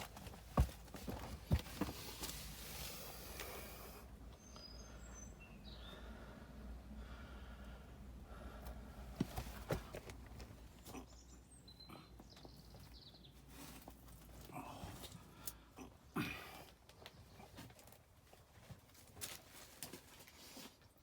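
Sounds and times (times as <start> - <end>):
faint scuffing on dirt: 0.0 - 3.7, 9.2 - 11.0, 17.0 - 20.9.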